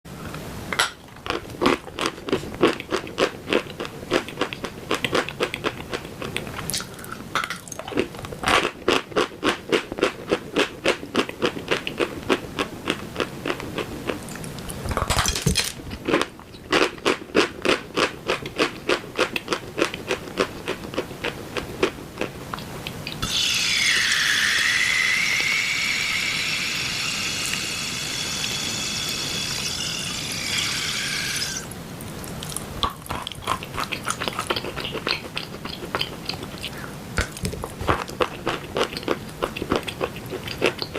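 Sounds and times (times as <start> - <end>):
chalk crunching when chewed: 1.2 - 14.8, 15.9 - 40.9
steady sound with dipping tone: 23.0 - 38.0.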